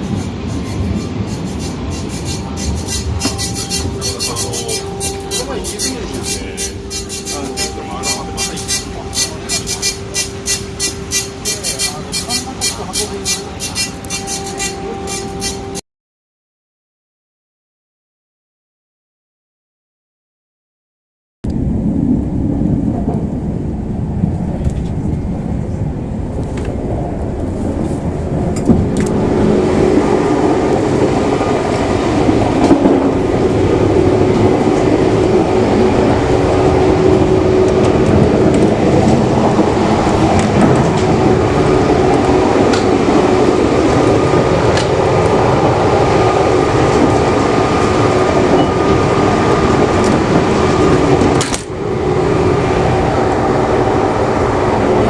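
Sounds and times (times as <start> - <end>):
continuous hum: 0.0 - 15.8
train rumbling: 0.0 - 15.8, 21.5 - 55.0.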